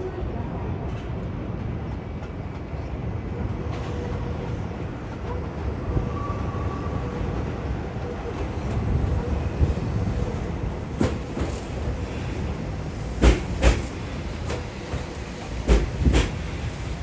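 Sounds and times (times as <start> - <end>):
train wheels rumbling on rails: 0.0 - 17.0
sharp rail clacks: 13.2 - 16.5.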